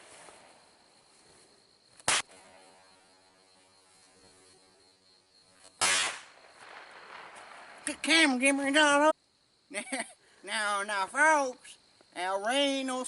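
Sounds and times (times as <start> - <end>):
firecracker bangs: 2.0 - 2.4, 5.8 - 7.9.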